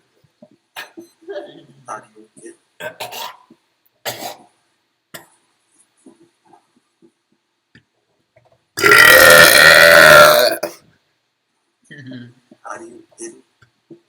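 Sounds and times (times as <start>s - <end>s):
loud long burp: 8.8s - 10.8s.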